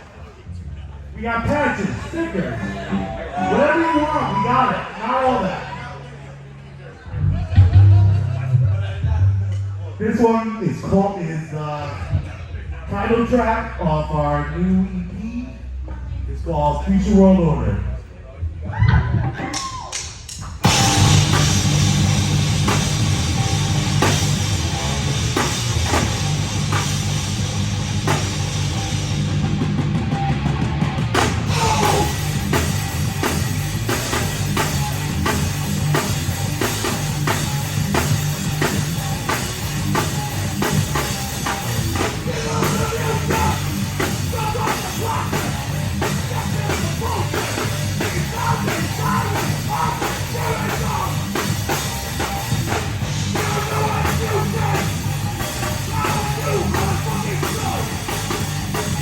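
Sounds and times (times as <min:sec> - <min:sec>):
lead guitar line: 0:01.4 - 0:10.5
heavy rock band playing: 0:07.2 - 0:09.8, 0:20.6 - 0:59.0.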